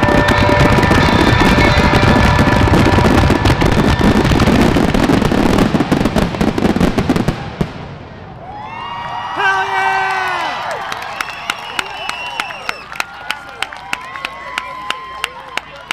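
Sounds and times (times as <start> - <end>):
crowd cheering and whistling: 0.0 - 5.6, 8.2 - 15.9
fireworks crackling and banging: 0.0 - 8.4.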